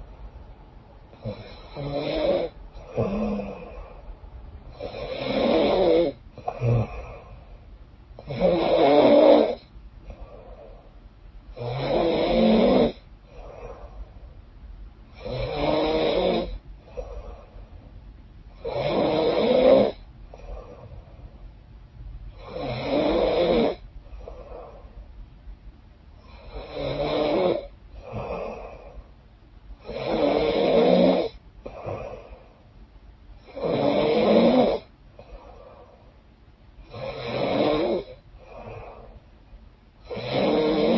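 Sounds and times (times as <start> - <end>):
woman snoring: 1.1 - 4.0, 4.7 - 7.4, 8.2 - 10.8, 11.6 - 13.9, 15.2 - 17.5, 18.6 - 20.8, 22.3 - 24.9, 26.2 - 29.0, 29.8 - 32.5, 33.4 - 36.0, 36.8 - 39.2, 40.0 - 40.9
faint breath: 2.5 - 5.0, 6.3 - 8.2, 10.0 - 11.1, 13.0 - 14.4, 16.7 - 18.0, 20.2 - 21.7, 24.0 - 25.2, 27.9 - 29.2, 31.6 - 32.8, 35.1 - 36.3, 38.2 - 39.6.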